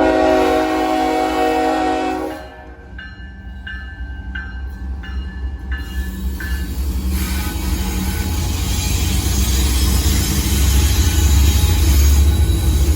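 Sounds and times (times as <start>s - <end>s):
locomotive air horn chord: 0.0s - 2.8s
locomotive bell ringing: 2.4s - 12.9s.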